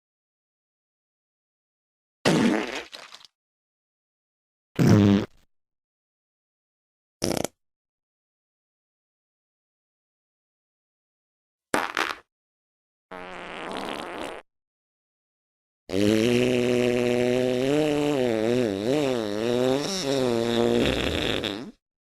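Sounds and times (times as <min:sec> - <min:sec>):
fart sound effects: 0:02.2 - 0:03.3, 0:04.8 - 0:05.3, 0:07.2 - 0:07.6, 0:11.7 - 0:12.3, 0:13.1 - 0:14.4, 0:15.9 - 0:21.8.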